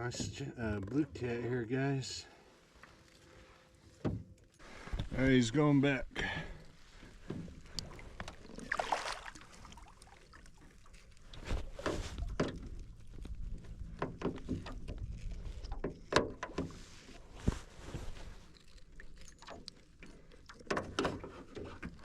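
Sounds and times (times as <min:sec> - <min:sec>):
water splashing: 0:06.5 - 0:15.2
small clicks and knocks: 0:11.0 - 0:16.8, 0:18.5 - 0:22.0.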